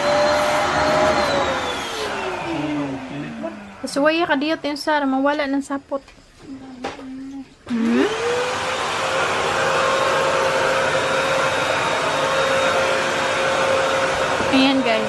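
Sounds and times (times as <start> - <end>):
handheld vacuum motor whine: 0.0 - 4.5, 7.7 - 15.0.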